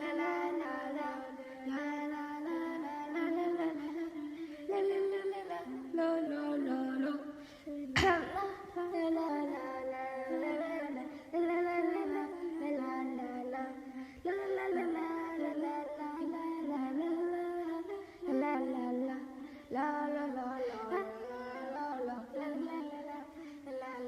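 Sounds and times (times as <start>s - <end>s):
high voice singing wordless tune: 0.0s - 24.0s
sharp knock: 8.0s - 8.5s.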